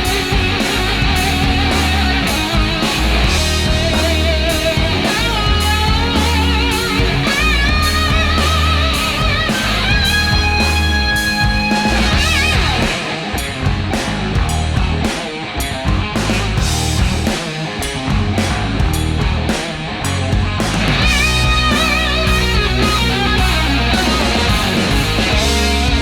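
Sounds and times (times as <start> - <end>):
lead guitar bending notes: 0.0 - 13.8, 21.0 - 26.0
rock music: 0.0 - 26.0.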